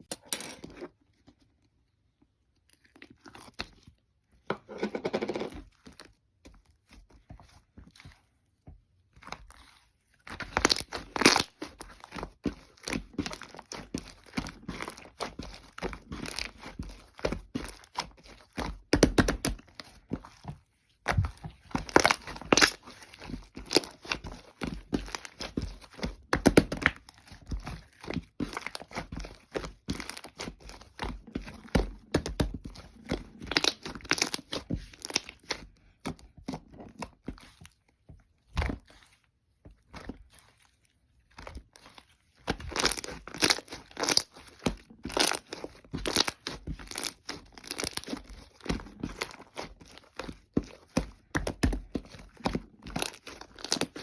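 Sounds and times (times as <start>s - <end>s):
slime crackling with sticky pops: 10.4s - 20.0s, 21.1s - 36.1s, 42.4s - 54.0s.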